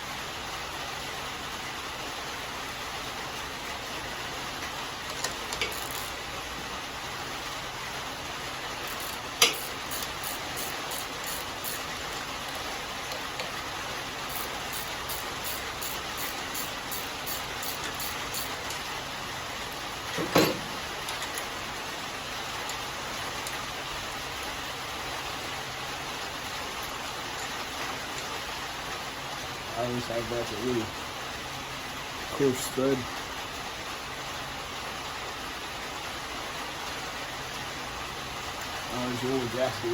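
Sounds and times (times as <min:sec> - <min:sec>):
steady hiss: 0:00.0 - 0:39.9
socket ratchet clicking: 0:05.2 - 0:06.2, 0:08.9 - 0:11.9, 0:14.3 - 0:18.8.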